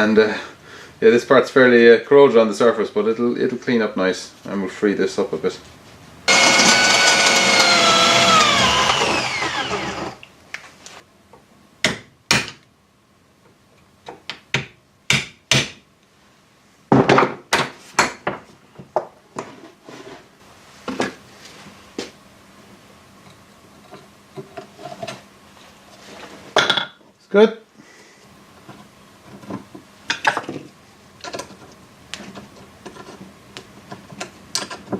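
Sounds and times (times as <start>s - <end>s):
electric drill whining: 6.3s - 10.2s.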